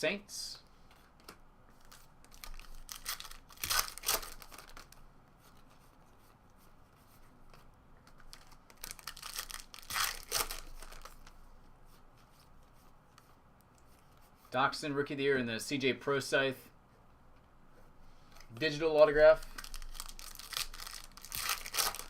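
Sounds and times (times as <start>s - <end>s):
rustling of wrappers and cards: 0.8s - 14.5s, 18.2s - 22.0s
wrappers tearing and crinkling: 1.8s - 5.0s, 8.2s - 11.3s, 19.4s - 22.0s.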